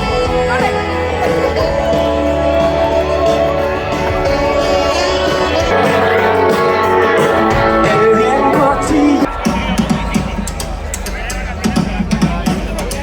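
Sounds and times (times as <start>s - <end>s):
guitar rock music: 0.0s - 12.4s.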